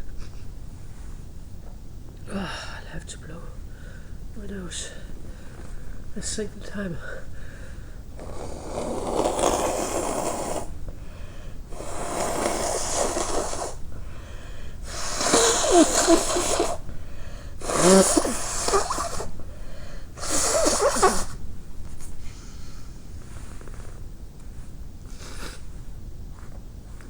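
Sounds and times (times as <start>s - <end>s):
person blowing nose: 8.2s - 10.8s, 11.7s - 13.9s, 14.8s - 16.9s, 17.5s - 19.4s, 20.1s - 21.4s, 25.1s - 25.7s.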